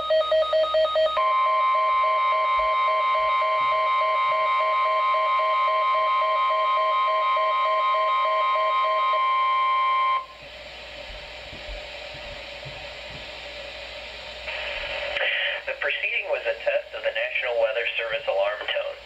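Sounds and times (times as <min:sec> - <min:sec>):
weather radio warning alarm tone: 0:01.2 - 0:10.4
faint radio hiss: 0:11.8 - 0:19.0.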